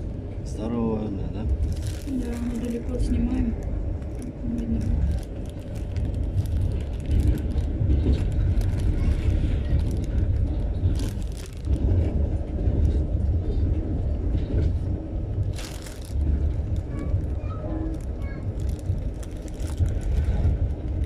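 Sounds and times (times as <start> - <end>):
train rumble: 0.0 - 21.0
faint clicks and clatter: 1.4 - 21.0.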